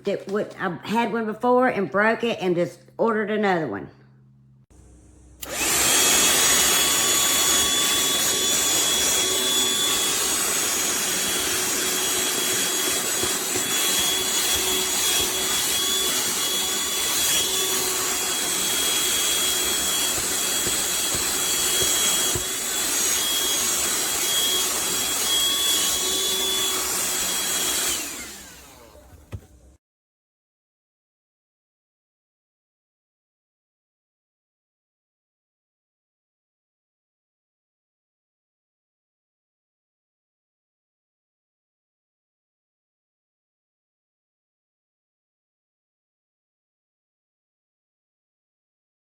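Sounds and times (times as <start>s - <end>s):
handheld vacuum motor whine: 4.8s - 29.8s.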